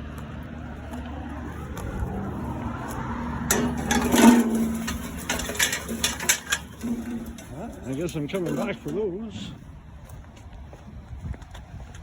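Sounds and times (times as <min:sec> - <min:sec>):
vehicle running with low hum: 0:00.0 - 0:07.9
clattering and knocking: 0:03.5 - 0:08.8.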